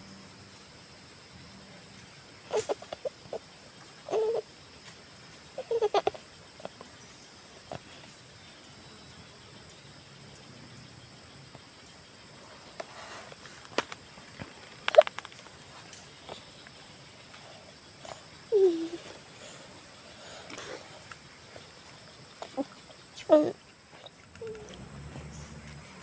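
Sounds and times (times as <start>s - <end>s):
insects droning: 0.0s - 26.0s.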